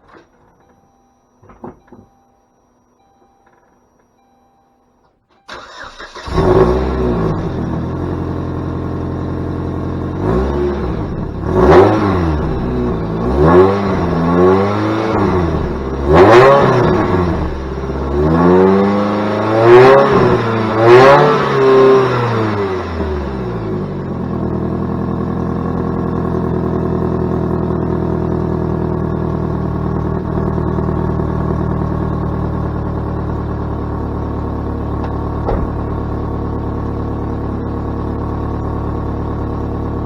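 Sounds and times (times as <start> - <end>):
car engine cranking: 5.4 - 40.0
car engine idling and revving: 5.5 - 40.0.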